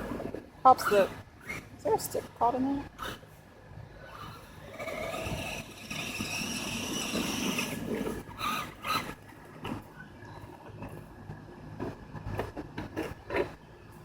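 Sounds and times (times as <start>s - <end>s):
toy truck electric motor whining: 4.0s - 9.2s.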